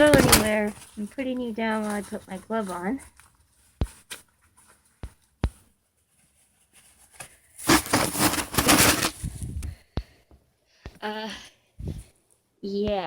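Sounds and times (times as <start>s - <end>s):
clothing rustling: 0.0s - 9.5s.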